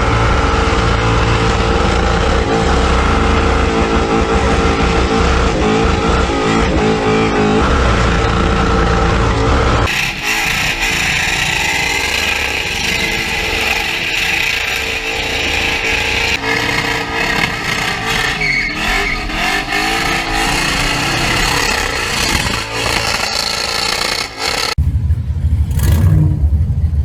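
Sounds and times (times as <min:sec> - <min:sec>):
car engine revving: 0:00.0 - 0:27.0.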